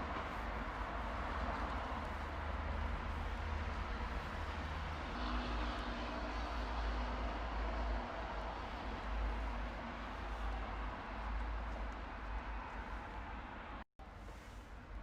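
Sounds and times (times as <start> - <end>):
traffic rumble and hiss: 0.0 - 15.0.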